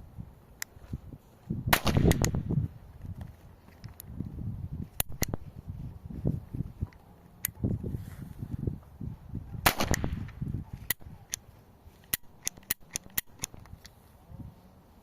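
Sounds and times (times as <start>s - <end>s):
metallic pistol clicks: 1.8s - 2.4s, 4.9s - 5.4s, 6.9s - 7.6s, 9.7s - 14.0s.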